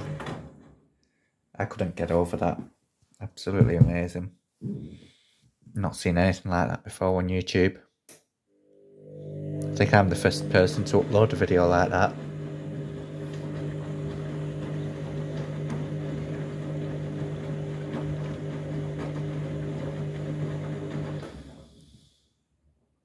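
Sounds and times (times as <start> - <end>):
washing machine humming: 0.0 - 0.8, 8.9 - 21.6.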